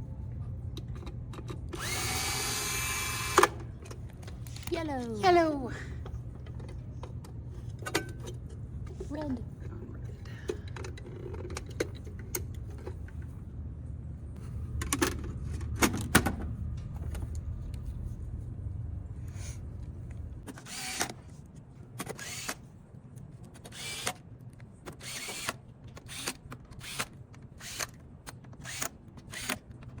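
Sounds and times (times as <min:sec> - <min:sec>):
low steady hum: 0:00.0 - 0:20.6.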